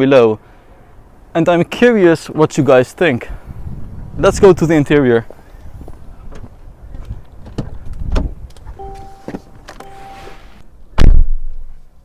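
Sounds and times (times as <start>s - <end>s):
car door opening clicks: 7.4s - 10.5s
two-tone electronic chime: 8.8s - 10.6s.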